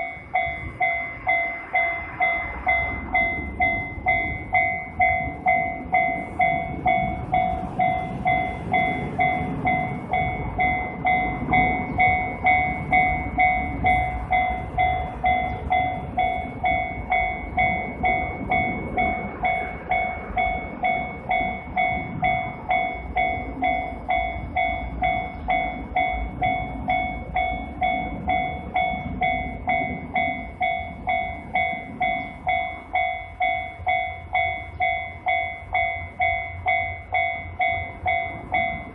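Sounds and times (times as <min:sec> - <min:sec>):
railroad crossing alarm ringing: 0:00.0 - 0:38.9
train rumble: 0:00.0 - 0:38.9.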